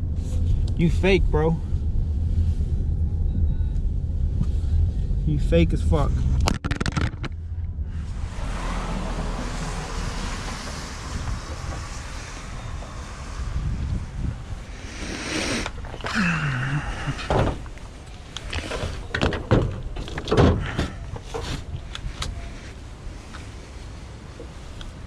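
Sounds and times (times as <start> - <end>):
low sliding sound: 1.6 - 5.3, 7.3 - 16.1
knocks and clunks: 6.2 - 13.0, 16.8 - 22.4.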